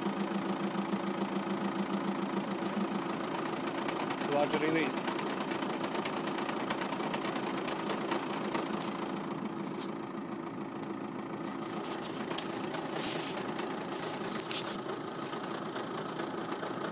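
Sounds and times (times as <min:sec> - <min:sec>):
diesel engine idling: 0:00.0 - 0:16.9.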